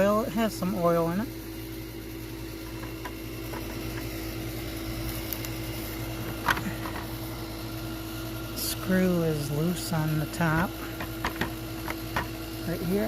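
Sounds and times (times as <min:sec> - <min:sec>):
low hum: 0:00.0 - 0:13.0
handling sounds on lawn mower: 0:02.6 - 0:04.2, 0:04.8 - 0:07.5, 0:10.3 - 0:13.0.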